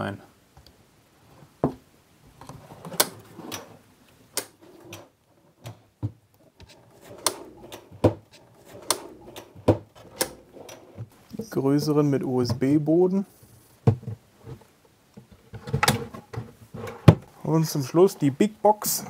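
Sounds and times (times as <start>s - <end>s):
drawer runners rolling: 2.4s - 3.8s, 4.4s - 5.9s, 6.6s - 11.9s, 15.4s - 17.4s
drawer slides clicking and knocking: 2.5s - 3.8s, 4.4s - 11.1s, 15.5s - 17.3s.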